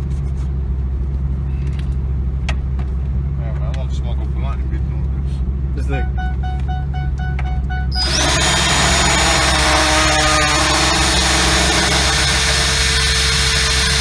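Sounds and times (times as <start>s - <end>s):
rotary tool whining: 7.9s - 14.0s
rotary tool grinding plastic: 8.0s - 14.0s.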